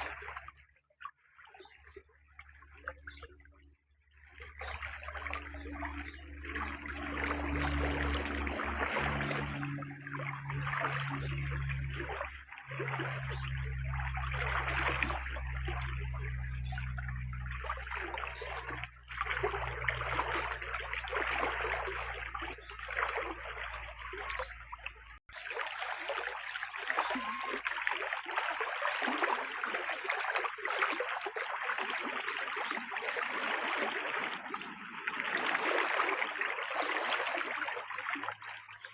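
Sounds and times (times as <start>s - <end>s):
water trickling and splashing: 0.0s - 38.9s
low steady hum: 4.8s - 25.2s.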